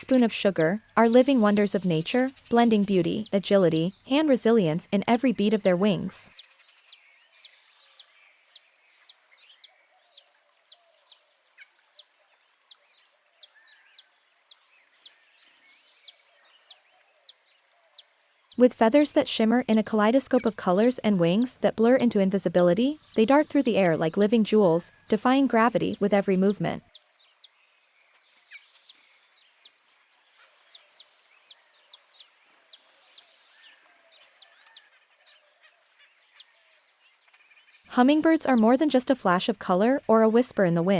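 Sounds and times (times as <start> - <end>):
faint bird chirps: 0.0 - 21.8, 28.2 - 38.7.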